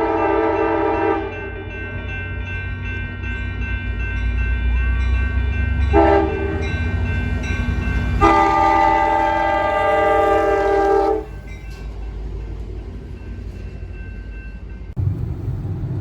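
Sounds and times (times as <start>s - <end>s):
train horn: 0.0s - 1.7s, 5.9s - 6.8s, 8.1s - 11.4s
low steady rumble: 15.0s - 16.0s.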